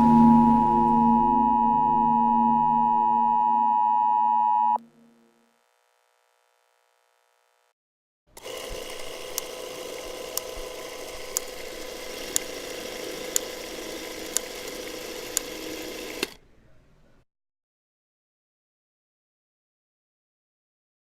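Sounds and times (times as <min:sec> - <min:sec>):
sharp clicks: 0:08.4 - 0:09.6, 0:10.2 - 0:11.6, 0:12.2 - 0:12.5
mechanical whirring hum: 0:08.4 - 0:16.5.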